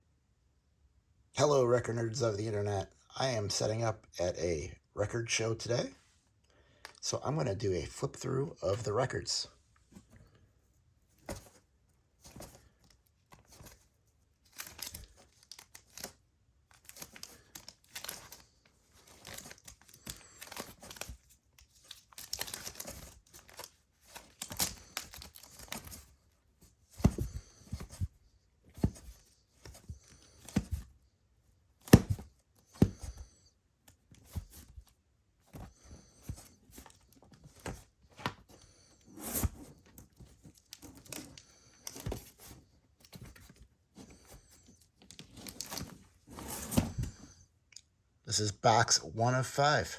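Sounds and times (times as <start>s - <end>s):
record sleeves rustling: 8.7s - 47.4s.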